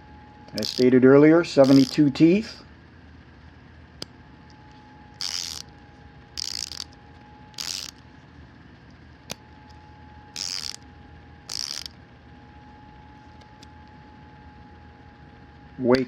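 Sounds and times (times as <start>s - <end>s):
ratchet clicking: 0.5s - 0.9s, 1.6s - 2.0s, 5.2s - 5.6s, 6.4s - 6.9s, 7.6s - 8.0s, 10.4s - 10.8s, 11.5s - 11.9s.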